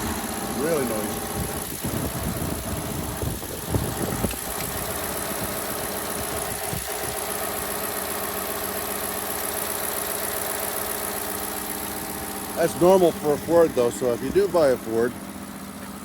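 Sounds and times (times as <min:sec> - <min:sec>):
transmission whining: 0:00.0 - 0:07.8.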